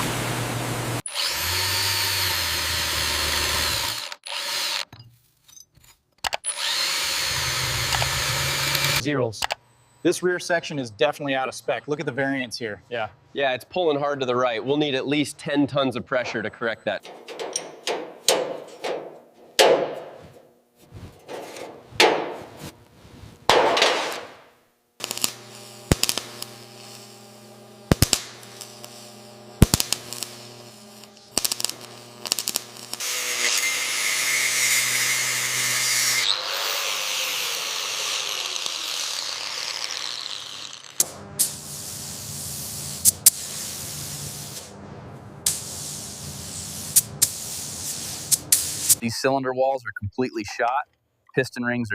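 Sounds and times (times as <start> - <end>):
motor humming: 6.5 - 9.0
sharp metal knocks: 17.0 - 20.2, 21.3 - 22.4
loud hissing burst: 39.9 - 44.8, 45.4 - 49.0.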